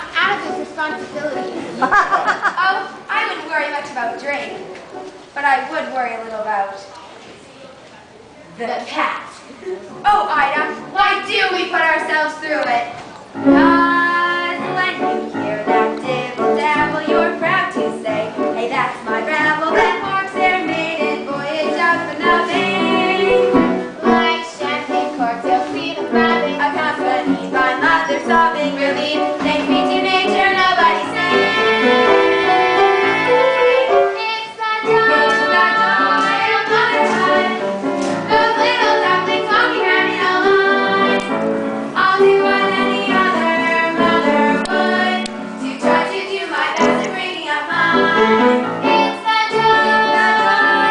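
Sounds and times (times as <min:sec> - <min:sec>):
girls singing: 0:10.1 - 0:50.9
instrumental accompaniment: 0:13.2 - 0:50.9.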